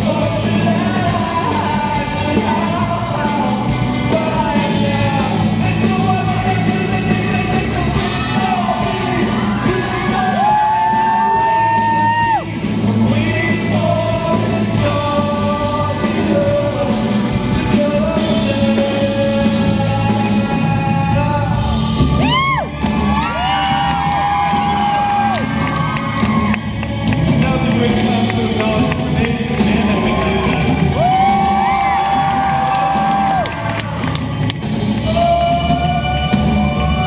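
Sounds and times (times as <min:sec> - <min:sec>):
fans screaming and whooping: 0:00.0 - 0:14.5, 0:20.1 - 0:37.0
live pop song with band: 0:00.0 - 0:37.0.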